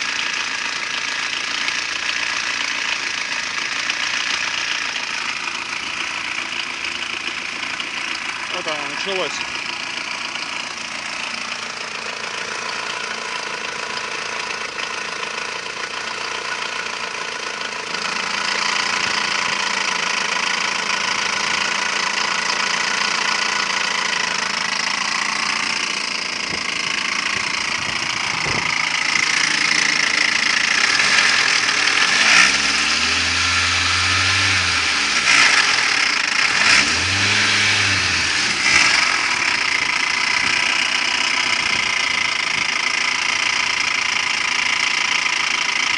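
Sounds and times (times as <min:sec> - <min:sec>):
engine revving: 0:17.9 - 0:43.7.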